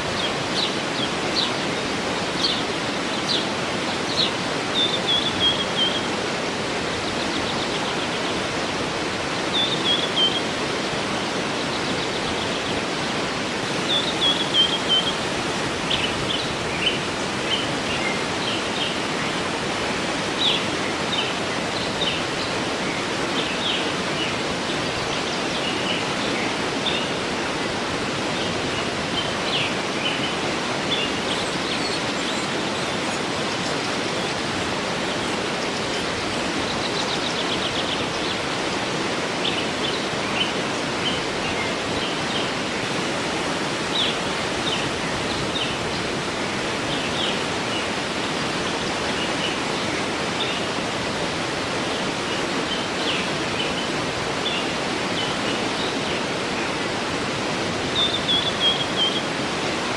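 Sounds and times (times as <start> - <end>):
birds chirping: 0.0 - 27.3, 28.3 - 43.0, 57.9 - 59.4
waterfall rushing: 0.0 - 59.9.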